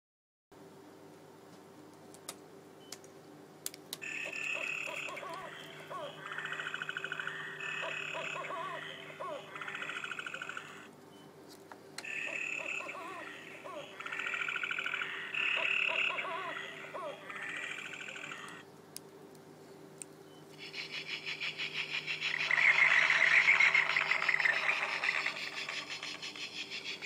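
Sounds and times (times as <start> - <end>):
recorded frogs croaking and trilling: 4.0 - 10.9, 12.0 - 18.7, 20.4 - 27.0
electronic hum: 4.0 - 11.4, 12.0 - 18.7, 19.4 - 27.0.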